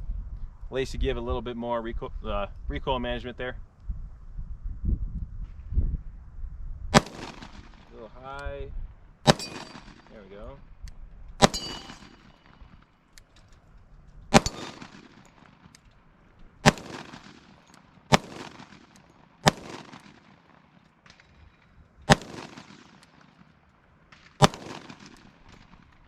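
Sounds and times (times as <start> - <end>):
pistol shots with echo: 6.9 - 8.0, 9.2 - 10.2, 11.4 - 13.4, 14.3 - 15.9, 16.6 - 23.5, 24.1 - 26.0.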